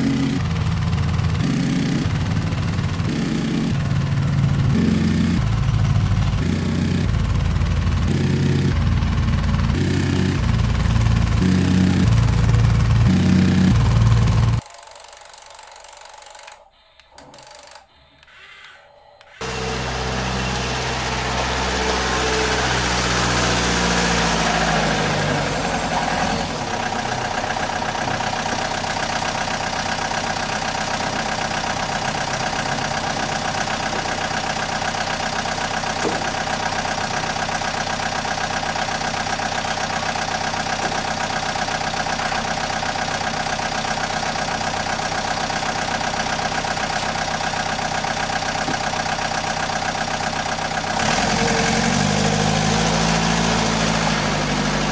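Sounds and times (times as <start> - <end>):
machine motor humming: 19.2 - 42.7.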